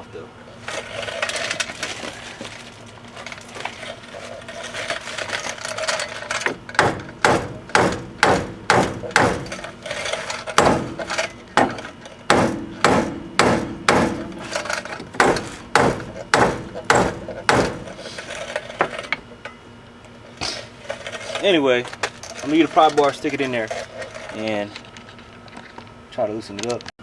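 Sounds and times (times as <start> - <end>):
scraping and handling of parts: 0.6 - 26.9
hammer striking metal: 6.8 - 9.6, 10.6 - 14.4, 15.2 - 17.9.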